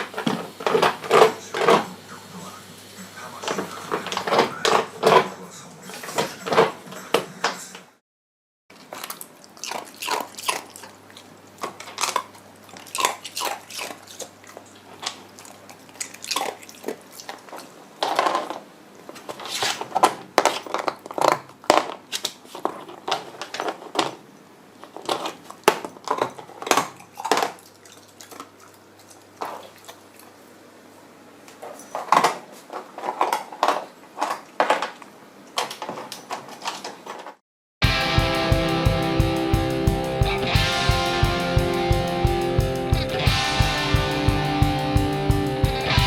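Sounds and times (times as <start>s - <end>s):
puppy crunching ice: 8.7s - 24.2s, 24.8s - 30.0s.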